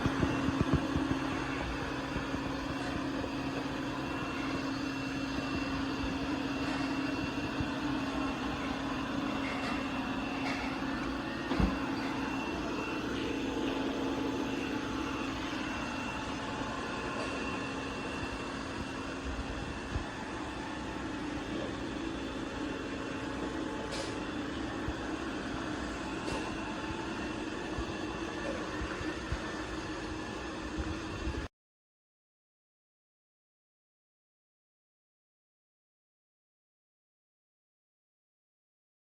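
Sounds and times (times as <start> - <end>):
robot vacuum motor humming: 0.0 - 30.8.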